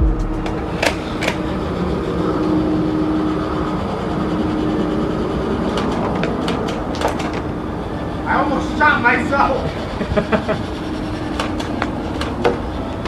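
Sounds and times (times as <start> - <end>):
low hum: 0.0 - 6.9
steady rumble: 0.0 - 13.0.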